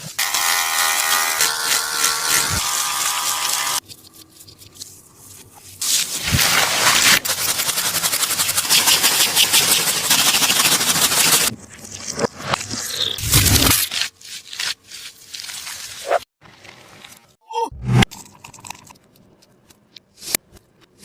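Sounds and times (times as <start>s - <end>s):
paper squishy crinkling: 13.4s - 17.2s.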